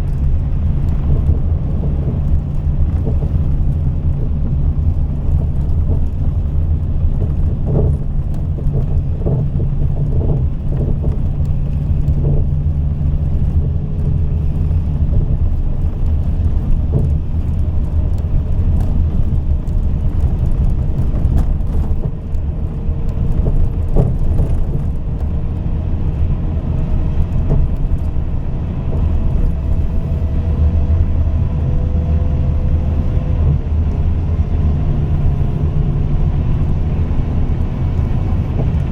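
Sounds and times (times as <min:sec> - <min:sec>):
diesel engine droning: 0:00.0 - 0:38.9.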